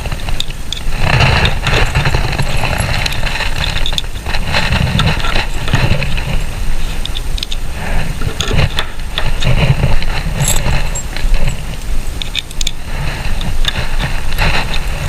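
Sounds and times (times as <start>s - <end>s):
steady low rumble: 0.0s - 15.0s
screwdriver clicks and rattles: 10.4s - 11.2s.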